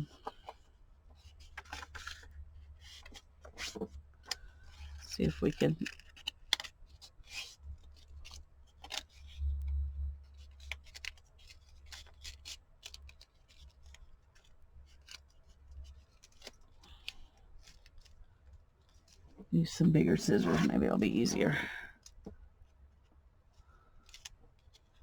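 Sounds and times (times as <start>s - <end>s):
low steady hum: 9.3s - 10.4s, 19.4s - 21.9s
paper rustling: 19.0s - 21.7s.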